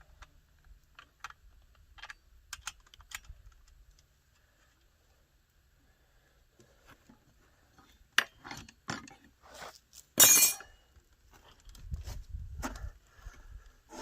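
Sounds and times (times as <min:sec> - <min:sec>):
tools clinking and knocking: 0:08.2 - 0:09.3, 0:10.2 - 0:10.8.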